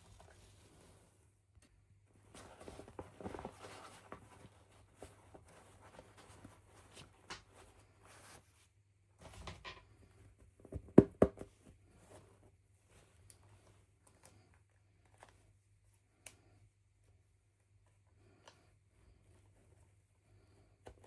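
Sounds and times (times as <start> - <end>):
plastic toys and packaging rustling: 0.0 - 1.1.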